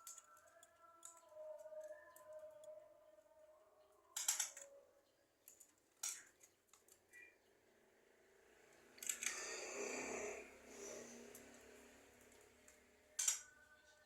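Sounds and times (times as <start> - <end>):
bird clicks and rasping calls: 0.0 - 2.8, 5.4 - 7.3, 12.7 - 13.6.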